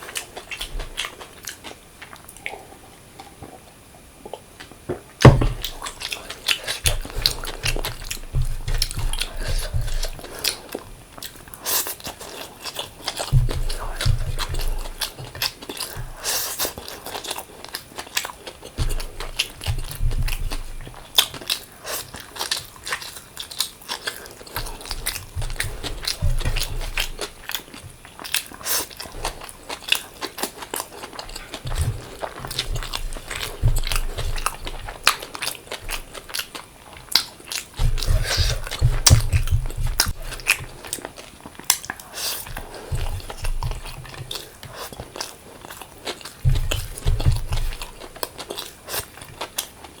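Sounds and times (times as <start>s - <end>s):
chewing and crunching food: 0.0s - 50.0s.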